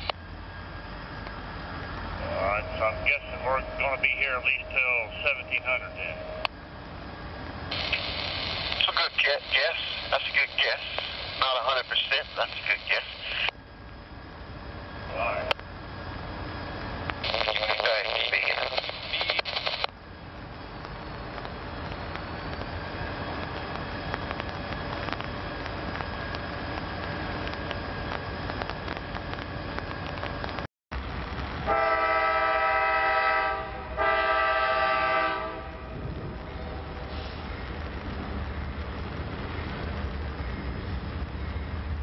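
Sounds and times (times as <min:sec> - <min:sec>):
pouring rain hiss: 0:00.0 - 0:42.0
train rumble: 0:00.0 - 0:42.0
locomotive air horn blasts: 0:31.7 - 0:35.9.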